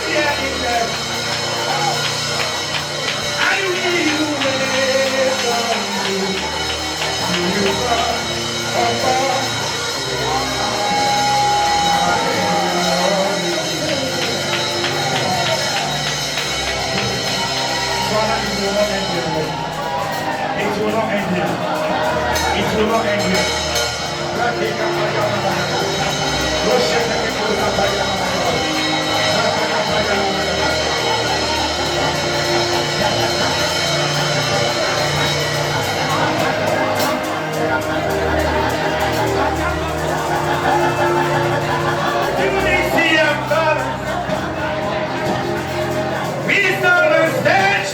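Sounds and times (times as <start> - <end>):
gospel band chords: 0.0 - 47.9
guitar: 0.0 - 47.9
steady bass line: 0.0 - 47.9.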